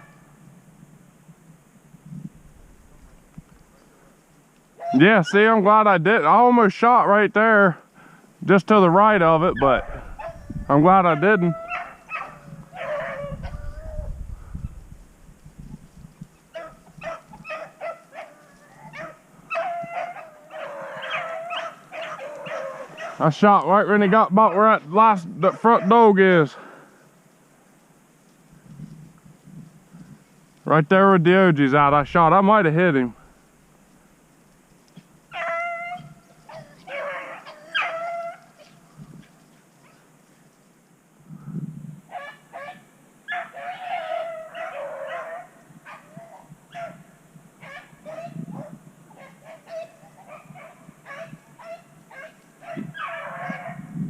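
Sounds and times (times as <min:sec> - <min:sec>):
hounds barking and baying: 0:04.8 - 0:05.6, 0:09.0 - 0:14.2, 0:16.2 - 0:26.7, 0:35.2 - 0:40.1, 0:42.1 - 0:53.9.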